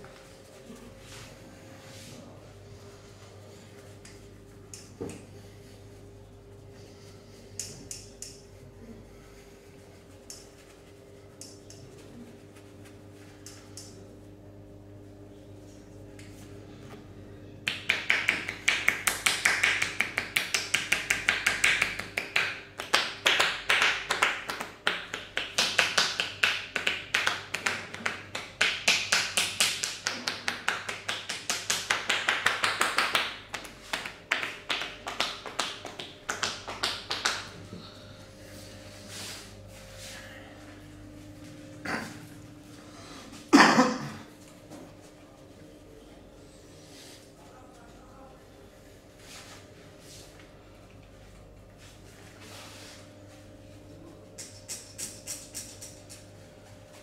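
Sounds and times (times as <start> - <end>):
hands slapping on body: 17.7 - 37.6.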